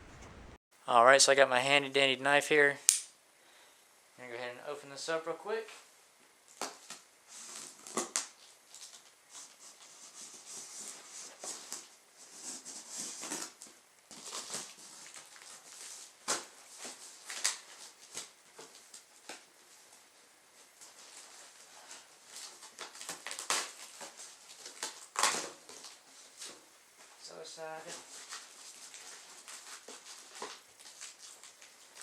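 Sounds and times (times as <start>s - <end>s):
sharp clicks and knocks: 0.0s - 0.6s.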